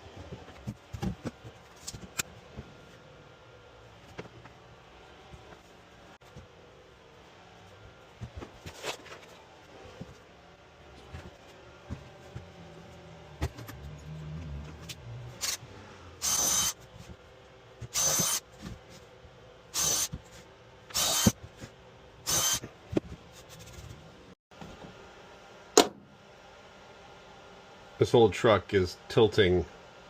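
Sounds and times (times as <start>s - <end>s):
power tool running: 13.8s - 16.8s, 17.9s - 18.4s, 19.8s - 20.1s, 20.9s - 21.4s, 22.2s - 22.6s.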